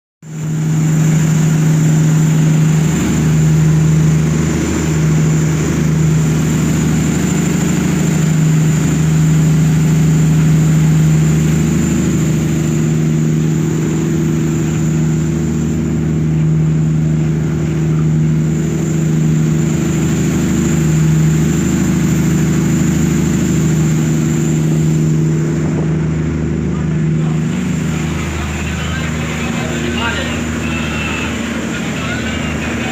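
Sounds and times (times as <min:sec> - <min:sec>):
diesel engine droning: 0:00.2 - 0:32.9
thin high whine: 0:27.0 - 0:32.9.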